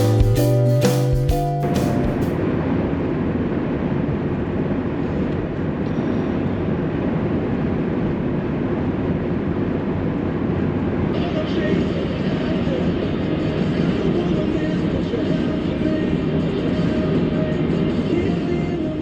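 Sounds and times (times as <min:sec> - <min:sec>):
guitar music: 0:00.0 - 0:02.5.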